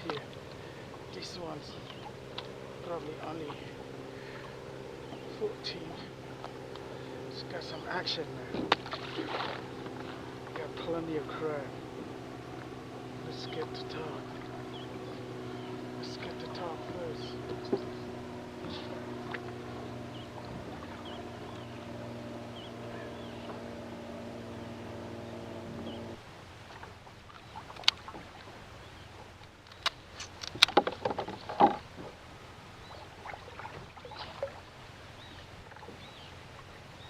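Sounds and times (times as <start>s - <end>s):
steady motor hum: 0.0s - 37.0s
sharp clicks and knocks: 29.4s - 32.1s.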